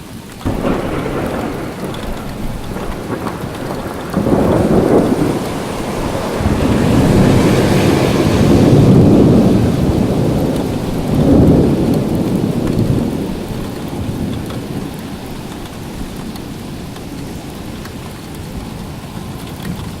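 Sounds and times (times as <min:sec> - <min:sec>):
steady rain: 0:00.0 - 0:20.0
thunder rolling: 0:00.4 - 0:16.4.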